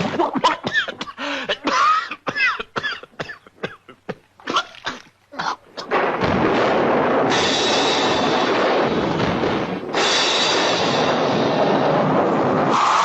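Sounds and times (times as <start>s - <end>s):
steady hissing noise: 0.0s - 13.0s.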